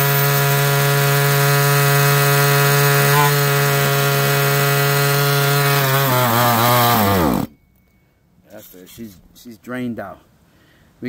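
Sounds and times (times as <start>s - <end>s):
small two-stroke engine revving: 0.0s - 7.5s.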